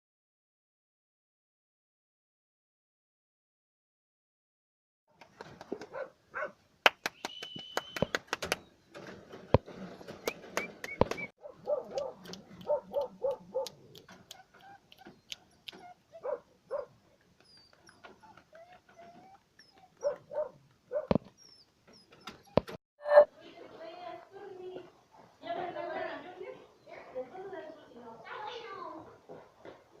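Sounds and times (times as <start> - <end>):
puppies whimpering and yipping: 12.6 - 16.8, 17.4 - 23.3.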